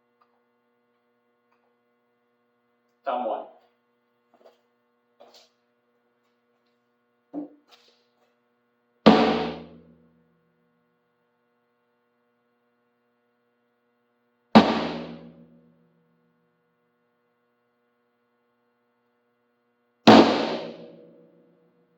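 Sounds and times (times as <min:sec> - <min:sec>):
tom drum hit: 0:09.1 - 0:09.9, 0:14.6 - 0:15.6, 0:20.1 - 0:21.2.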